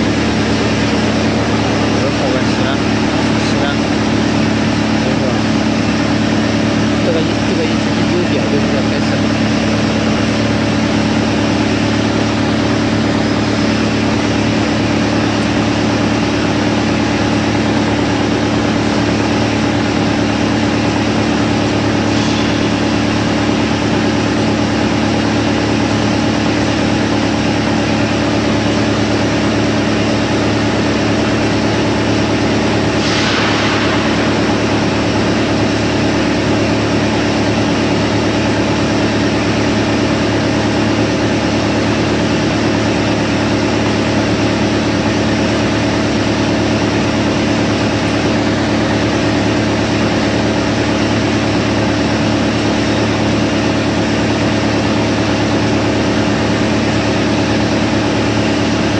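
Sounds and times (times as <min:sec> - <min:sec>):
wood chipper running: 0:00.0 - 0:58.9
rushing noise: 0:32.9 - 0:36.6.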